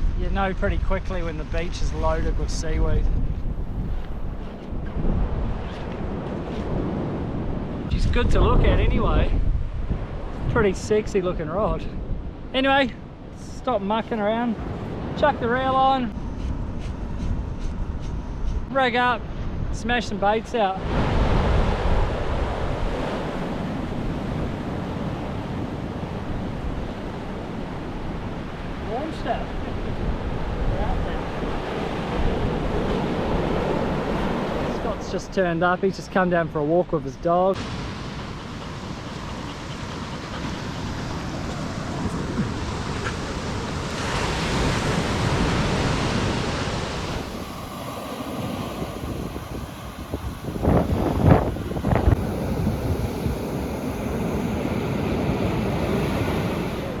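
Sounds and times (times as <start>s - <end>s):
wind buffeting microphone: 0.0s - 35.2s, 37.6s - 57.0s
surf washing onto beach: 18.6s - 35.0s, 37.5s - 57.0s.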